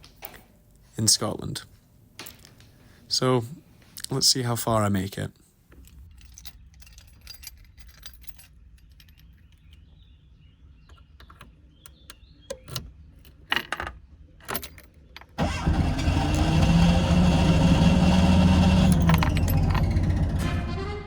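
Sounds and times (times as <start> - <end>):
keys jangling: 5.8 - 9.8
car engine starting and running: 15.4 - 21.0.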